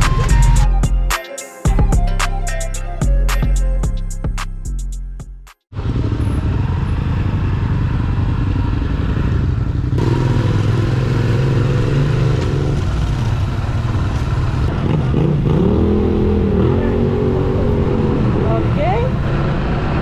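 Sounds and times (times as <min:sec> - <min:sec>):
music with drum beat: 0:00.0 - 0:05.6
road noise: 0:05.7 - 0:20.0.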